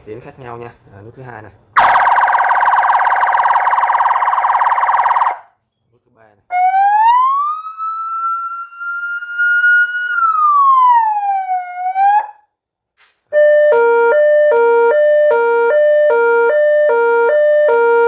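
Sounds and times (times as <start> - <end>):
siren wailing: 1.8 - 5.5, 6.5 - 12.4, 13.4 - 18.0
two-tone siren: 1.8 - 5.6, 6.5 - 12.5, 13.3 - 18.0.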